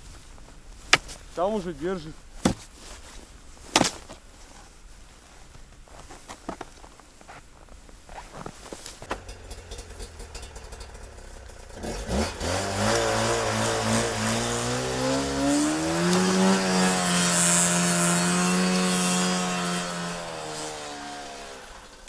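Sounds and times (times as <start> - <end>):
snowmobile engine revving: 9.1 - 22.0.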